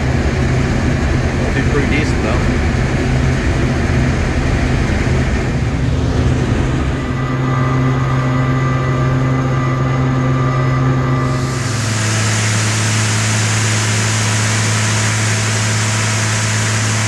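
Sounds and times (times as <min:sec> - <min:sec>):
combine harvester engine drone: 0:00.0 - 0:17.0
machinery whine: 0:00.0 - 0:17.0.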